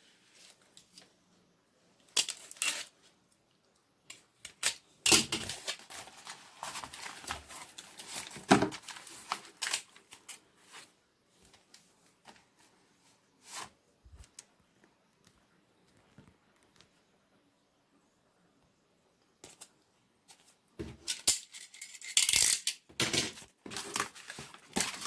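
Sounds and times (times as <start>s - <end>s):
packaging rustling and crinkling: 4.6s - 12.8s, 23.3s - 25.0s.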